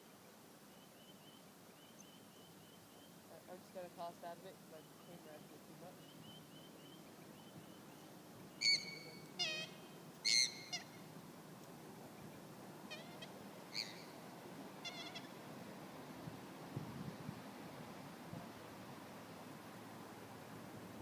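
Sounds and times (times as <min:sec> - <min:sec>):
short loud bird calls: 0:04.8 - 0:11.0, 0:12.9 - 0:14.2, 0:14.8 - 0:15.4.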